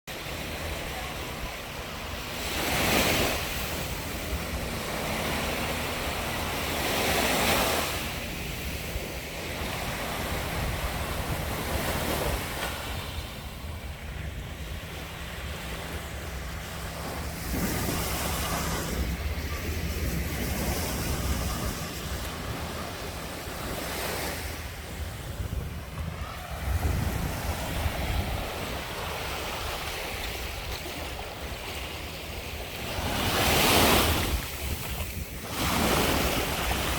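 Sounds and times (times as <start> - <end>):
sea waves breaking on beach: 0.1 - 36.9
wind on microphone: 0.1 - 36.9.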